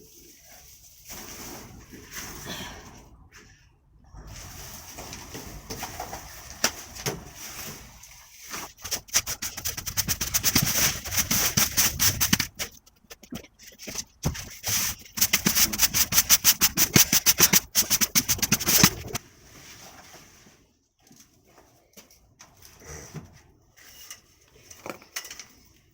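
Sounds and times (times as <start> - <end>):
rapid scraping across floor: 4.2 - 12.9, 14.0 - 20.8.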